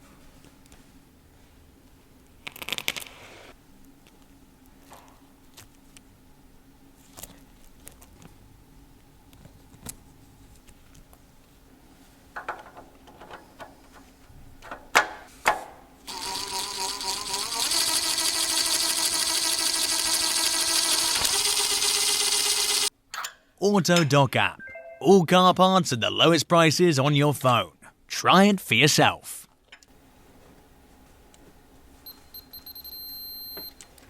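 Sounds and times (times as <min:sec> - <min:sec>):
small electric motor running: 0:16.1 - 0:22.9.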